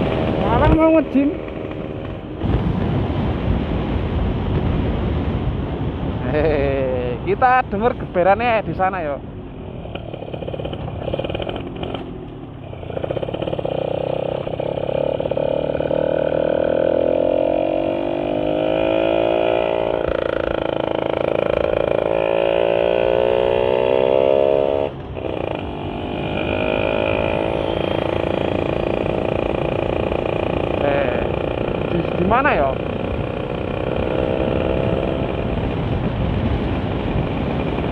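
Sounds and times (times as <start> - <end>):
two-stroke motorcycle engine revving: 0.0 - 3.0, 9.6 - 37.9.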